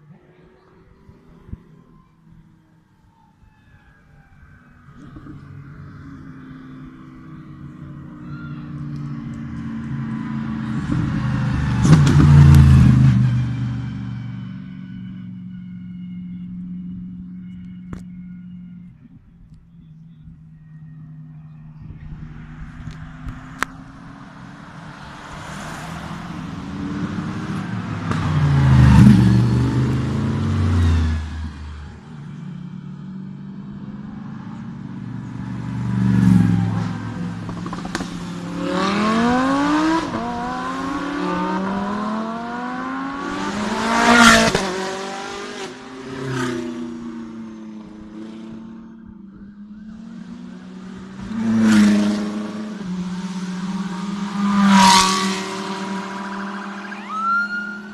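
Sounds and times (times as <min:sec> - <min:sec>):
low engine drone: 0:00.0 - 0:25.4
race cars driving past: 0:00.0 - 0:57.9
car revving up: 0:33.7 - 0:48.8.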